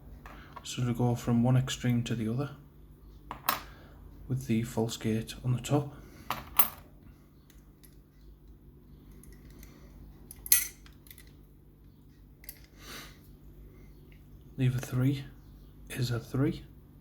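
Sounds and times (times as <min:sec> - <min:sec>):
lock parts clicking and clinking: 0:07.5 - 0:09.7, 0:10.3 - 0:11.4.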